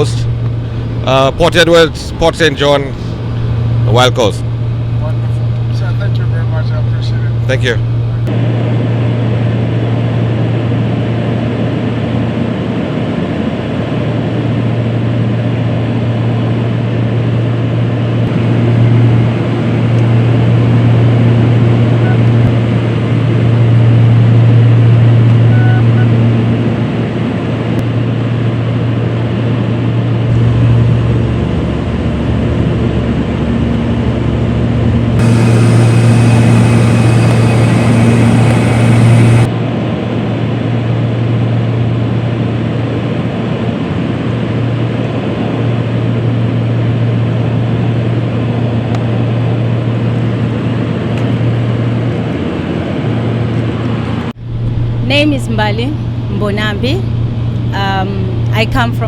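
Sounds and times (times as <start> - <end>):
aircraft cabin drone: 0.0 - 59.0
bright hiss with high tones: 35.2 - 39.5.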